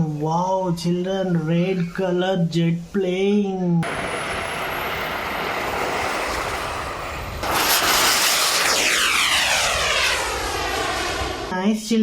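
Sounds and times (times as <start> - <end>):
high engine whine: 3.8 - 11.6
jet aeroplane flying past: 3.8 - 11.7.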